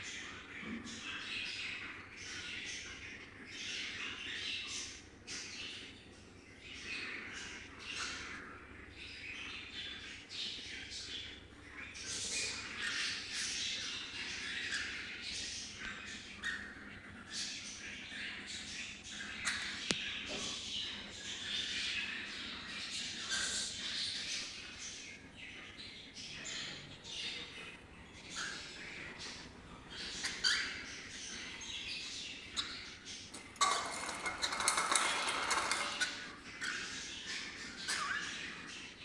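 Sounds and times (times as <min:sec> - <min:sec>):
parrots squawking and chirping: 0:26.6 - 0:31.6, 0:32.5 - 0:38.7.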